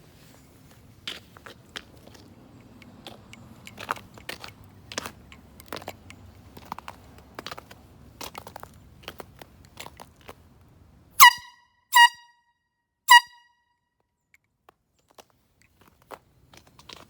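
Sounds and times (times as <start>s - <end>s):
handling crunches and clicks: 1.0s - 10.7s, 14.3s - 17.0s.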